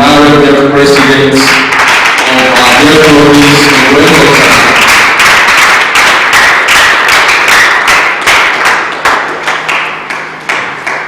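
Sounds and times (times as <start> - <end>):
audience clapping: 0.8 - 11.0.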